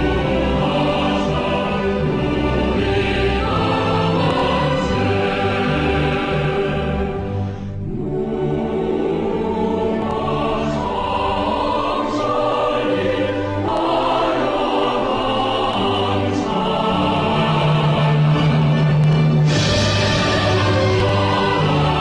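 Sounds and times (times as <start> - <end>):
choir singing sustained chords: 0.0 - 22.0
orchestra playing: 15.8 - 22.0.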